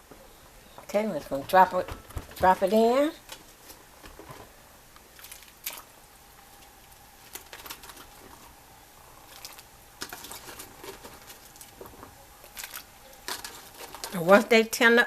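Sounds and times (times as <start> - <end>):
vegetables dropping into water: 5.2 - 5.9, 9.3 - 14.3.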